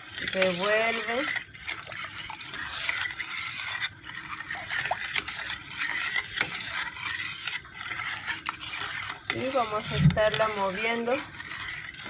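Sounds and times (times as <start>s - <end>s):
liquid swishing: 0.0s - 12.0s
spoon scraping a pot: 0.0s - 12.0s.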